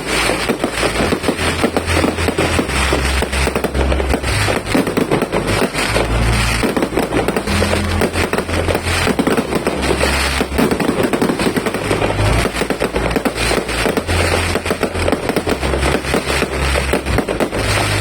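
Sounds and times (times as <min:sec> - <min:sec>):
fireworks bangs and crackles: 0:00.0 - 0:18.0.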